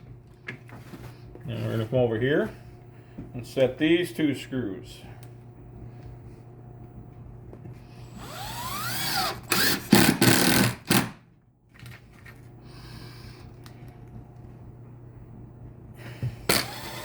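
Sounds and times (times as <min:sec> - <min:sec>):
power drill driving screw: 0:08.0 - 0:11.2, 0:12.7 - 0:13.6, 0:16.5 - 0:17.0.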